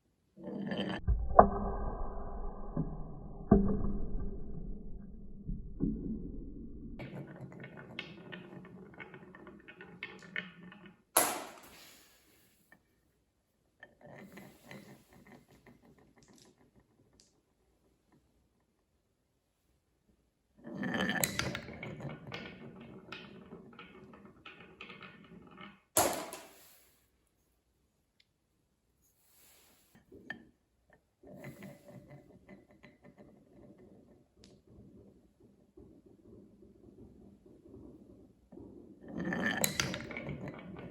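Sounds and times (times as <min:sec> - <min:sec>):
marbles rolling on wooden track: 0:02.3 - 0:11.7, 0:14.2 - 0:18.8, 0:20.6 - 0:26.7, 0:31.2 - 0:40.9.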